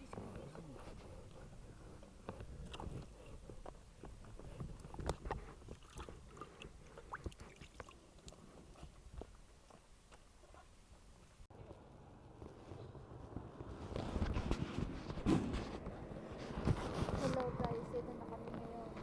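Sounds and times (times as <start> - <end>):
wind rumble on microphone: 12.9 - 19.0.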